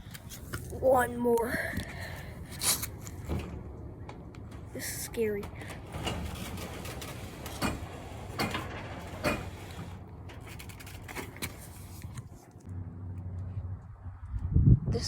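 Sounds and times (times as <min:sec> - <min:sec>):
garage door rumbling in tracks: 0:02.0 - 0:12.6
garage door clunks: 0:02.9 - 0:11.7.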